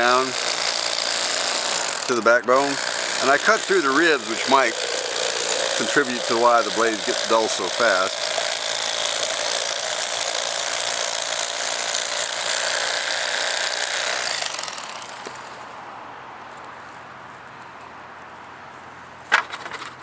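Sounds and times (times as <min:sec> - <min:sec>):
electric fillet knife buzzing: 0:00.0 - 0:15.6.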